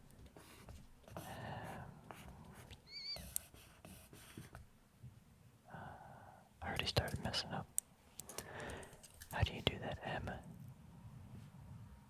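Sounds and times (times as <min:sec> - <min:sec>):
pencil scratching on paper: 0:00.2 - 0:04.6
high wavering chirp: 0:02.8 - 0:03.2.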